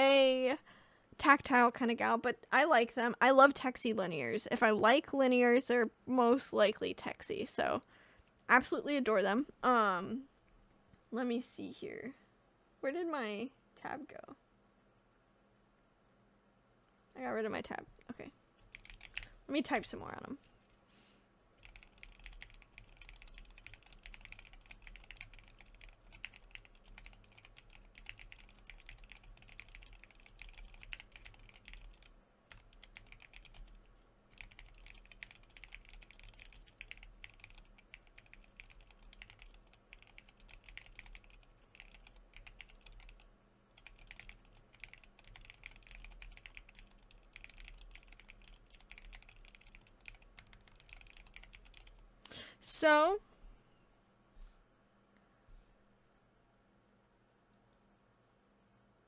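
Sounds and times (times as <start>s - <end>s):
mechanical keyboard typing: 18.7s - 19.3s, 21.6s - 52.0s.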